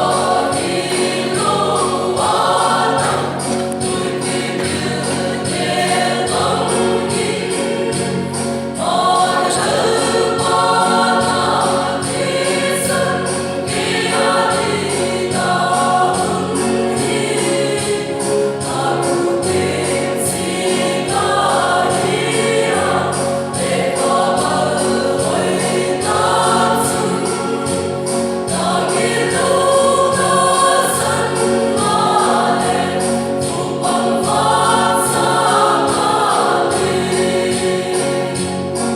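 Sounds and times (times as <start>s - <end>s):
choir singing gospel music: 0.0s - 38.9s.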